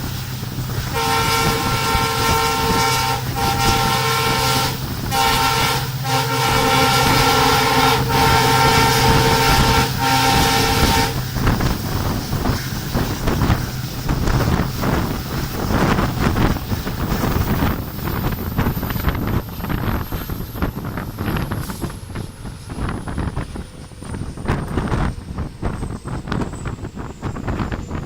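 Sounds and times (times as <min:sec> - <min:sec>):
train rattling and clattering: 0:00.0 - 0:28.0
wind: 0:00.0 - 0:28.0
locomotive horn blasts: 0:00.8 - 0:11.6.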